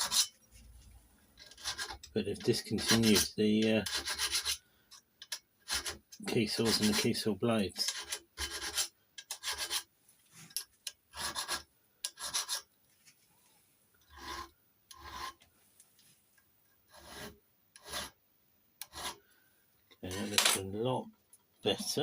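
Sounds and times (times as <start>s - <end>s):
hand file rasping on metal: 0.0s - 0.3s, 1.4s - 4.6s, 5.7s - 6.0s, 6.6s - 7.1s, 7.8s - 9.9s, 11.1s - 12.6s, 14.1s - 15.4s, 16.9s - 18.2s, 18.8s - 19.2s.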